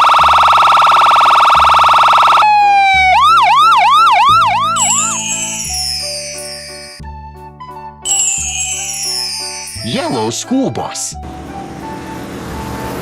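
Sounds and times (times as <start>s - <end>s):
cartoon siren: 0.0s - 5.6s
children's background music: 1.6s - 13.0s.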